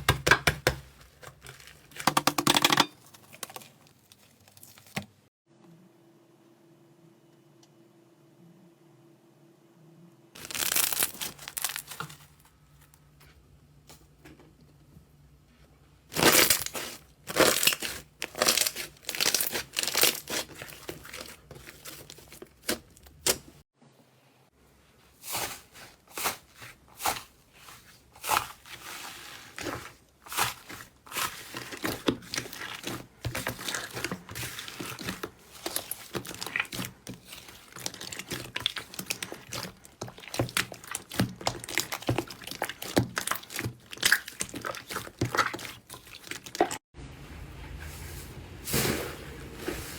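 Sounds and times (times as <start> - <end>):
slime crackling and popping: 10.4 - 12.0, 16.2 - 22.8, 30.3 - 46.7.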